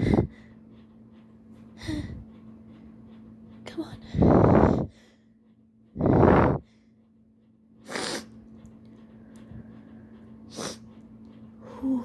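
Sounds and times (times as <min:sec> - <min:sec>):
person breathing heavily: 0:00.0 - 0:00.6
sharp sniff: 0:07.8 - 0:08.4, 0:10.5 - 0:11.0.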